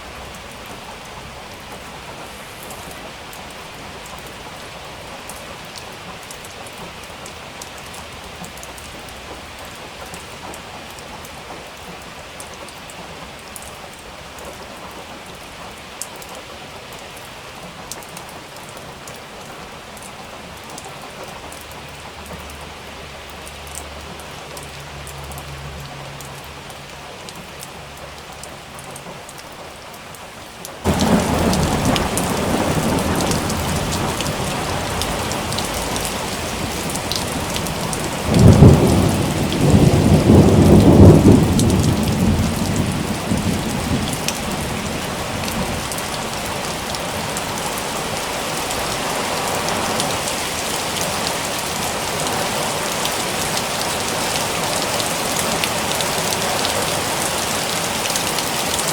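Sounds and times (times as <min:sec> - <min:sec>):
rain falling: 0:00.0 - 0:58.9
thunder rumbling: 0:30.8 - 0:50.0.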